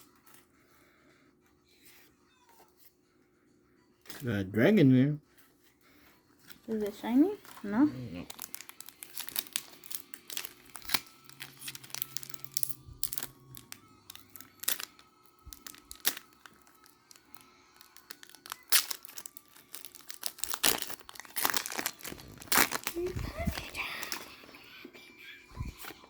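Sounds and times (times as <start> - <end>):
foil wrapper crinkling: 6.4 - 24.5
cards being handled: 7.4 - 24.5.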